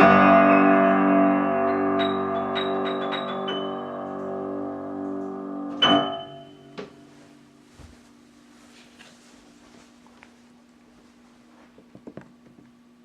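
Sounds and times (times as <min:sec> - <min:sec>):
loud piano chord: 0:00.0 - 0:07.6
piano notes ringing: 0:00.0 - 0:08.6
faint steady hum: 0:03.6 - 0:13.0.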